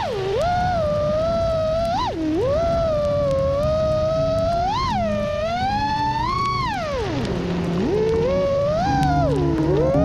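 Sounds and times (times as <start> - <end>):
drone motors whining: 0.0 - 10.0.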